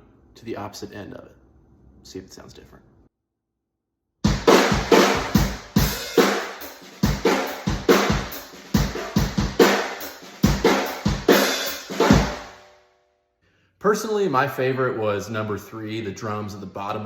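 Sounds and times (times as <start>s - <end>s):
drum kit playing: 4.3s - 12.6s.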